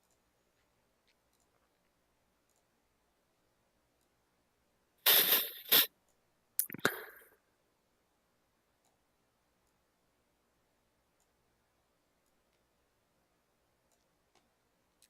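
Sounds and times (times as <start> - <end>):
person sniffling: 5.1 - 5.9.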